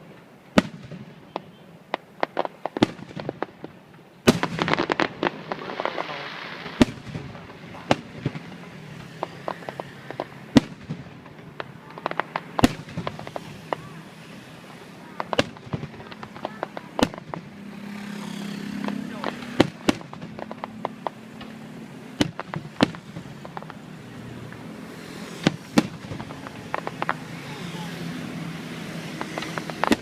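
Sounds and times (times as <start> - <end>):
fireworks bangs: 0.0 - 30.0
fireworks crackling: 0.0 - 30.0.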